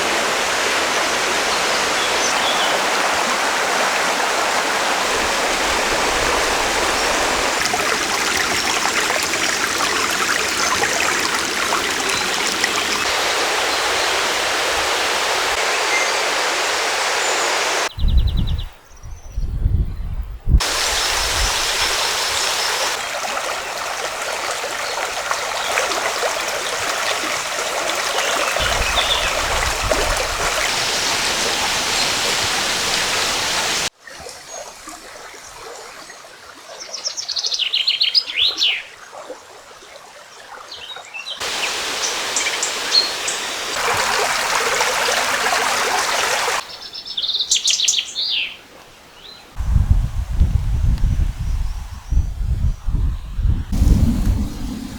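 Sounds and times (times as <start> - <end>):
rushing river water: 0.0 - 17.9, 20.6 - 46.7
songbird singing: 15.6 - 23.0, 28.1 - 33.9, 40.7 - 49.6.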